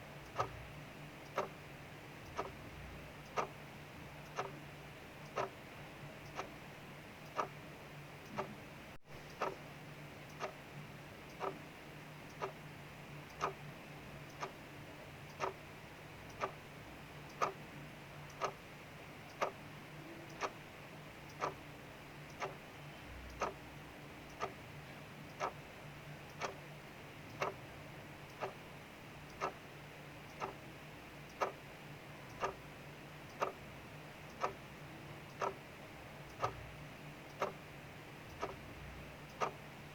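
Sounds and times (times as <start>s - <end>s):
mechanical clock ticking: 0.1s - 8.6s, 9.2s - 12.6s, 13.2s - 39.9s.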